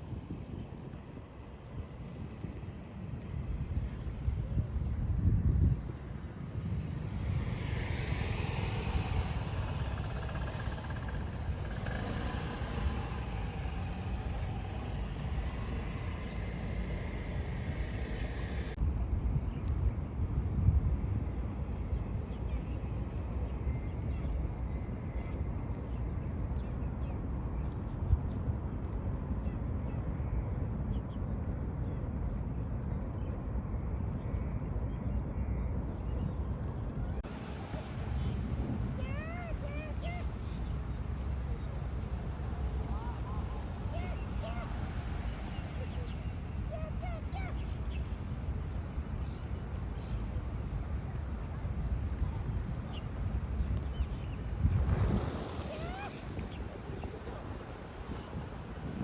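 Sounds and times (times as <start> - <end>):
wind rumbling on microphone: 0.0 - 59.0
passing road traffic: 3.6 - 18.8, 36.9 - 52.1, 54.4 - 59.0.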